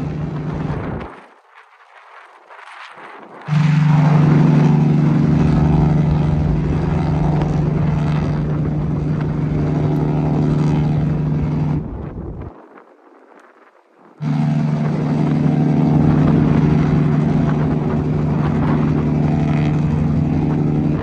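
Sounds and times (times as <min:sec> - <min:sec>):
ship horn long deep blast: 0:00.0 - 0:01.1, 0:03.5 - 0:12.3, 0:14.2 - 0:21.0.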